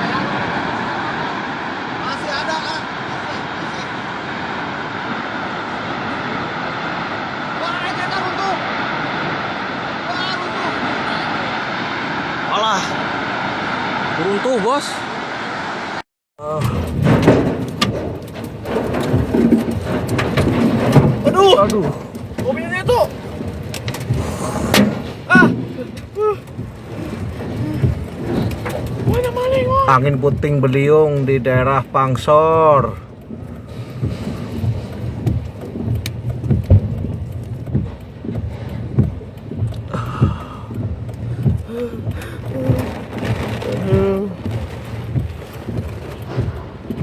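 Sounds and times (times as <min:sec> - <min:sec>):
low thumps: 0:16.4 - 0:47.0
sharp knocks and thuds: 0:16.4 - 0:47.0
wind buffeting microphone: 0:16.7 - 0:47.0
person shouting: 0:25.3 - 0:25.5, 0:26.2 - 0:26.4.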